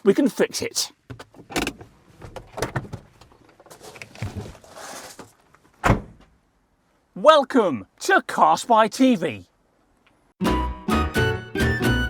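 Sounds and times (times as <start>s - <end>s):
car door clunks: 5.8s - 6.3s.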